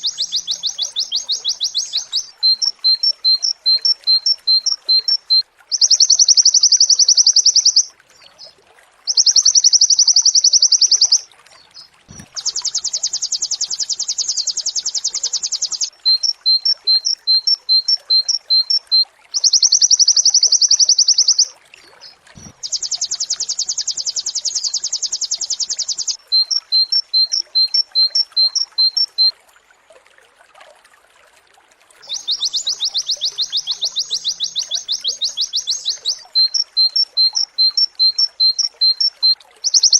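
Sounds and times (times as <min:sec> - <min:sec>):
bird singing fast trills and chirps: 0:00.0 - 0:08.5, 0:09.1 - 0:29.3, 0:32.0 - 0:39.9.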